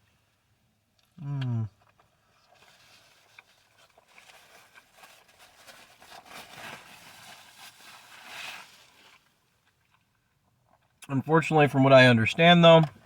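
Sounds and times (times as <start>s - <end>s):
rustling and scraping handling noises: 2.3s - 9.4s.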